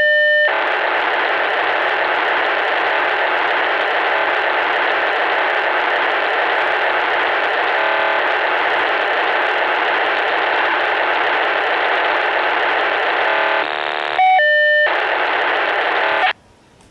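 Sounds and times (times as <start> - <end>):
two-tone radio beep: 0.0 - 1.8, 10.4 - 16.3
radio hiss through speaker: 0.0 - 16.4.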